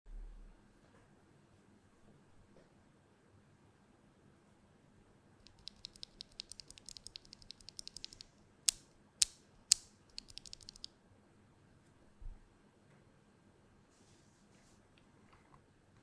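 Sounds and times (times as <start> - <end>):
mechanical keyboard typing: 5.5 - 10.9.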